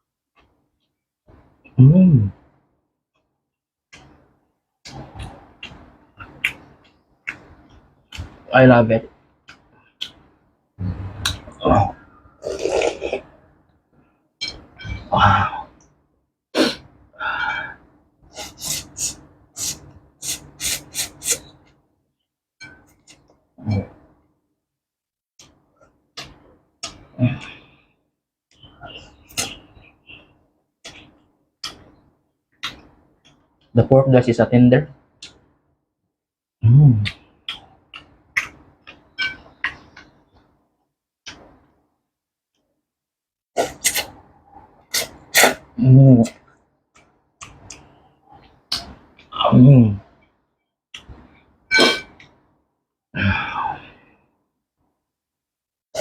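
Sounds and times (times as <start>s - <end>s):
person slurping soup: 12.4s - 13.3s, 17.6s - 21.5s
person chewing with wet smacks: 37.0s - 40.4s, 46.3s - 49.3s.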